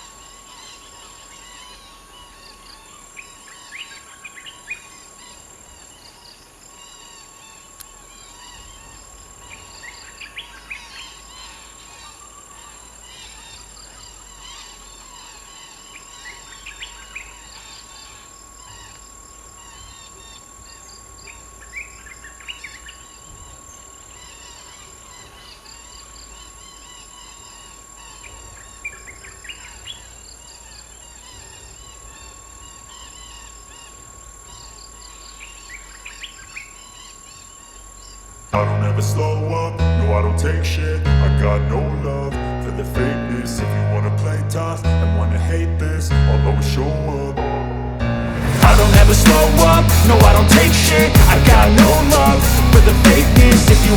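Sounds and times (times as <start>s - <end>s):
high-pitched insect drone: 0.0s - 38.6s.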